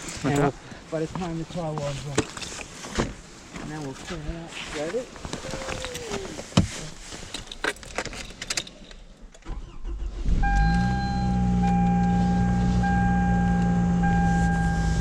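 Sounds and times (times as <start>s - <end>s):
car engine starting and idling: 9.4s - 15.0s
high electronic warning tone: 10.4s - 15.0s.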